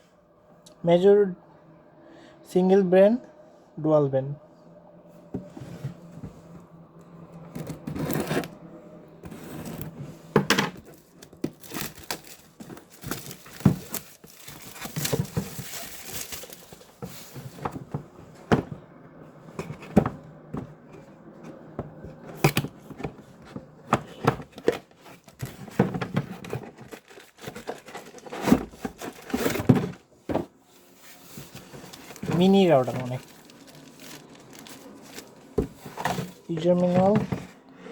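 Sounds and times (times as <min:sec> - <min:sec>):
clicks and knocks handling box: 0:09.3 - 0:18.7, 0:19.6 - 0:30.5
wrapping crinkling and tearing: 0:10.8 - 0:17.0, 0:26.4 - 0:29.7, 0:31.2 - 0:37.2.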